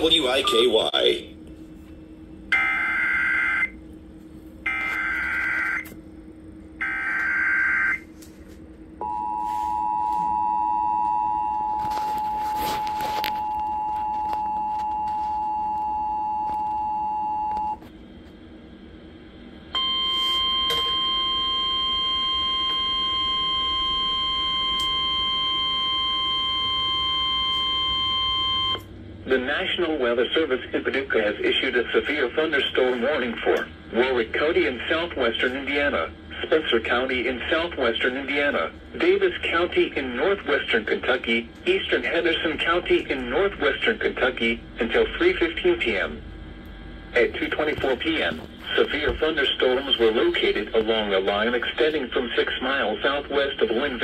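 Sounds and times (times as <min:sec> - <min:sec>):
single-pitch warning alarm tone: 0:02.5 - 0:03.8, 0:04.6 - 0:05.9, 0:06.8 - 0:08.1, 0:09.0 - 0:17.9, 0:19.7 - 0:28.9.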